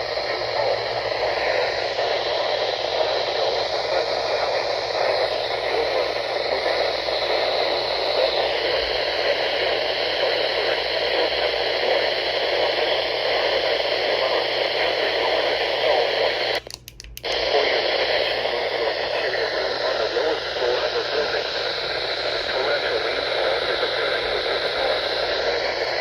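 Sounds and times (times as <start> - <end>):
radio static hiss: 0.0 - 26.0
clicks: 16.5 - 17.5.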